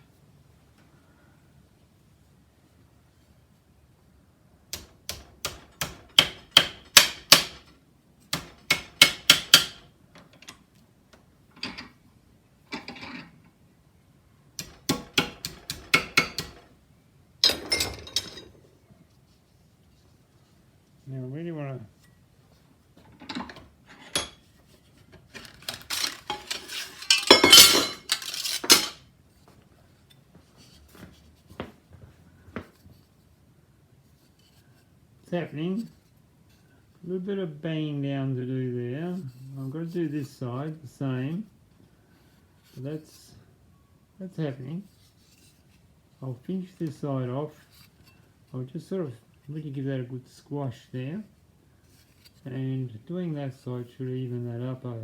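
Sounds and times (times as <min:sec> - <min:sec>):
sheet metal and tools clattering: 0:11.5 - 0:12.0, 0:12.7 - 0:13.5, 0:17.4 - 0:18.7, 0:23.0 - 0:29.0.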